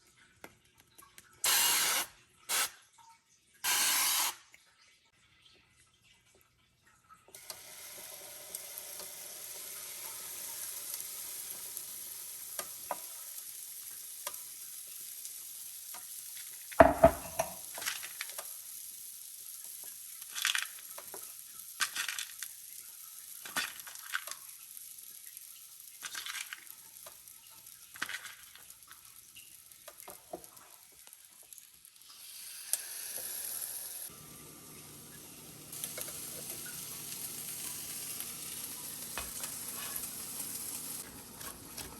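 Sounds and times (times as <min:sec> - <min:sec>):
food sizzling in frying pan: 0:01.4 - 0:02.7, 0:07.4 - 0:41.9
utensils clinking on cookware: 0:16.8 - 0:18.1.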